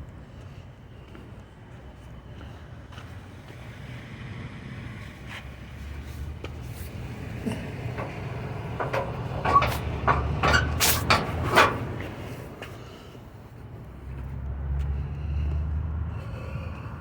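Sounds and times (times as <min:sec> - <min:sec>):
truck engine idling: 0:04.0 - 0:17.0
sharp metallic knocks: 0:06.9 - 0:12.4.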